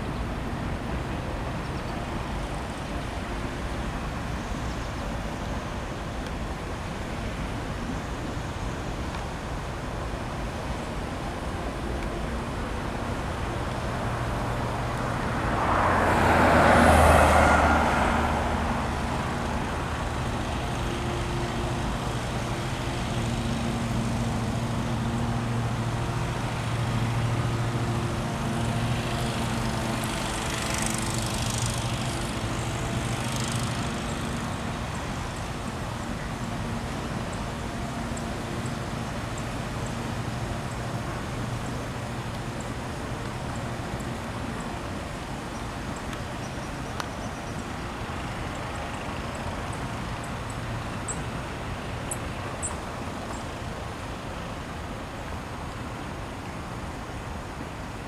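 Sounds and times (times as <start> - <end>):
low engine drone: 0.0 - 56.8
vehicle passing by: 12.1 - 57.1.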